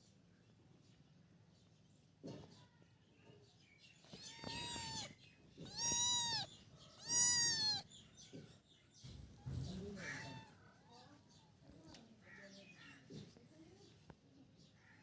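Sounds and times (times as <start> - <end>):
kitten meowing: 4.1 - 7.9, 9.8 - 10.6.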